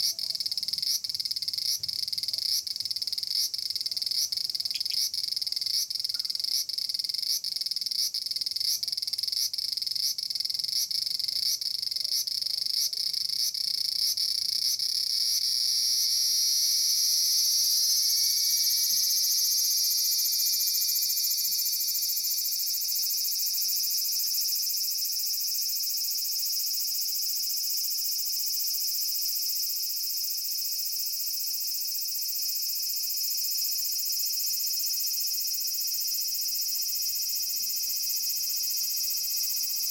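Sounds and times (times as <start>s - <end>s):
cicada buzzing: 13.5s - 23.9s, 34.7s - 39.9s.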